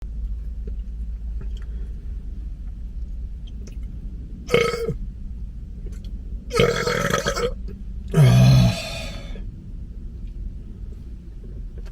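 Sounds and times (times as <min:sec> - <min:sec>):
steady low hum: 0:00.0 - 0:11.9
person burping: 0:04.5 - 0:05.0, 0:06.5 - 0:09.4.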